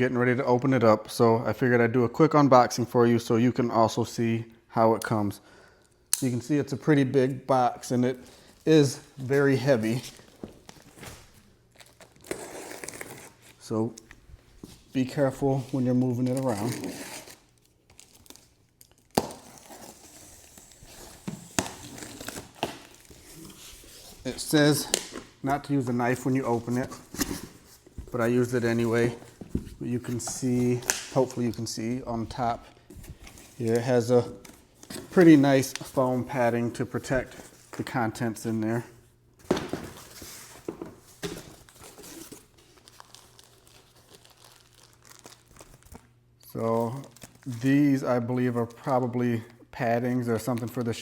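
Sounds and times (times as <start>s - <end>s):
packing material crinkling: 8.3s - 37.6s, 41.2s - 47.8s
cardboard and tape rustling: 8.4s - 38.8s, 39.4s - 46.1s.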